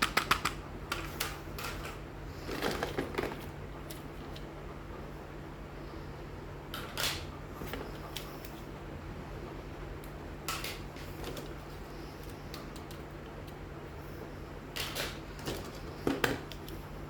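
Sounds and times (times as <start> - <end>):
steady low hum: 0.0 - 17.0
packaging rustling: 2.4 - 3.5.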